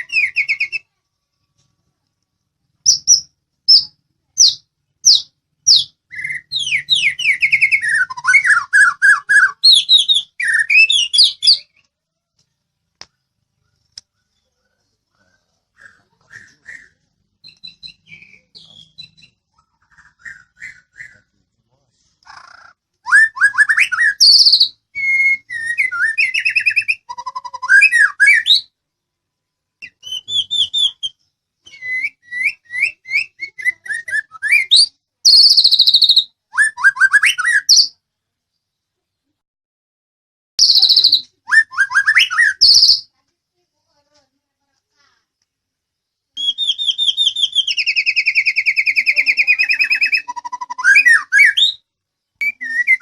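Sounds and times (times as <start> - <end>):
bird singing whistles and trills: 0.0 - 0.9, 2.9 - 11.9, 15.8 - 21.3, 23.0 - 28.7, 29.8 - 38.0, 40.6 - 43.1, 46.4 - 51.8, 52.4 - 53.0.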